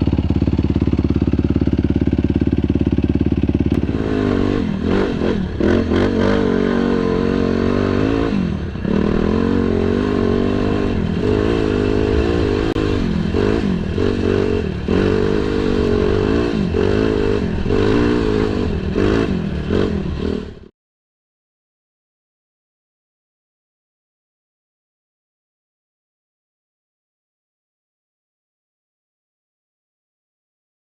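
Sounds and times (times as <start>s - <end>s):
quad engine revving: 0.0s - 20.7s.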